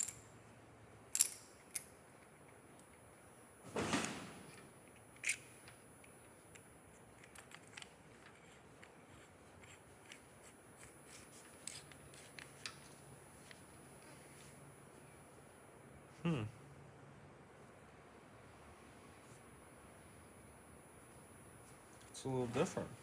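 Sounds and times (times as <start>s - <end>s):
small metal parts clicking and clinking: 0.0s - 0.3s, 1.1s - 3.0s, 4.9s - 10.2s.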